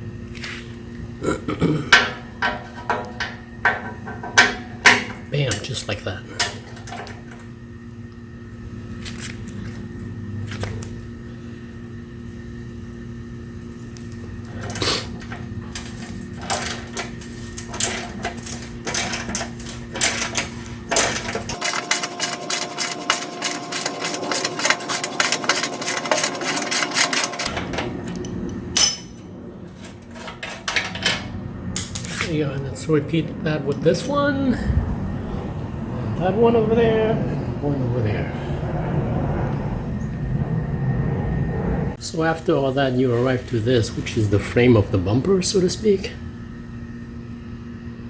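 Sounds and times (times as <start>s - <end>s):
steady low hum: 0.0s - 48.0s
tool clicks and knocks: 1.9s - 5.2s
ratchet clicking rapidly: 16.4s - 27.5s.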